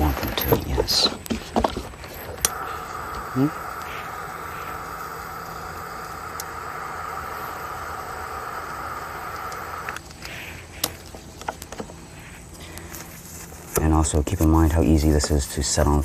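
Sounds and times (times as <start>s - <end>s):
heat tool rushing: 2.0s - 11.0s.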